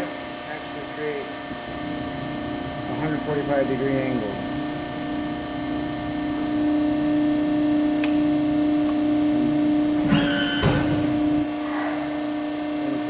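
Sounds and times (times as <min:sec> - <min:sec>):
press brake humming: 0:10.0 - 0:11.4
high squeal: 0:10.1 - 0:10.9
press ram clunk: 0:10.1 - 0:11.2.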